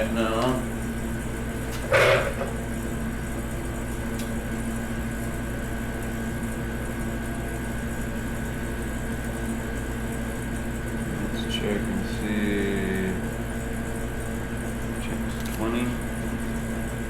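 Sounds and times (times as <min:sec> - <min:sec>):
machine hum: 0:00.0 - 0:17.0
short clatter: 0:01.7 - 0:02.6.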